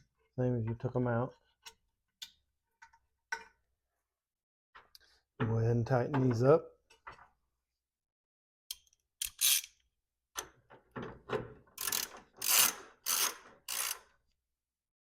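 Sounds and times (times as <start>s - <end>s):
hand ratchet clicking: 8.7s - 9.8s, 11.8s - 14.1s.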